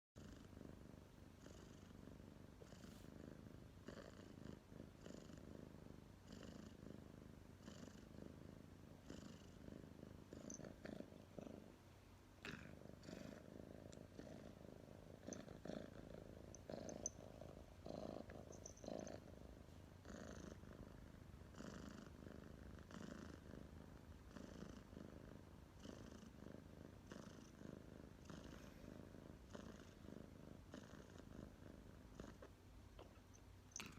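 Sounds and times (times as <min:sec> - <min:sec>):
cat purring: 0:00.2 - 0:33.9.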